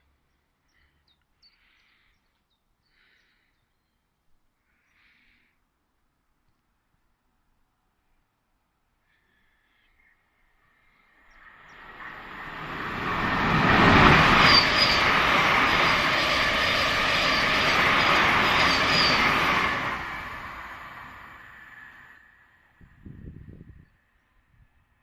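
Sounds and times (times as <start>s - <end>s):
train rumbling past: 11.1s - 23.3s
high wheel squeal: 12.1s - 19.6s.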